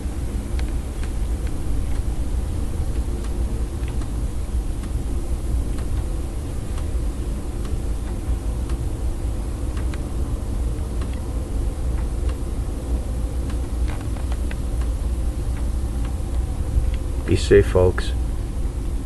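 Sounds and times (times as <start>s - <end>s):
faint ticks: 3.0s - 4.2s, 9.7s - 10.1s, 10.8s - 11.2s.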